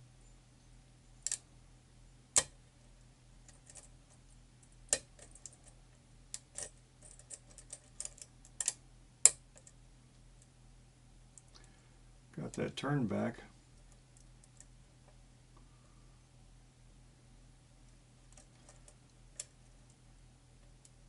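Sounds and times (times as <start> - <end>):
faint steady hum: 0.0 - 21.0
lock pick clicking on pins: 1.2 - 1.4, 6.3 - 9.8.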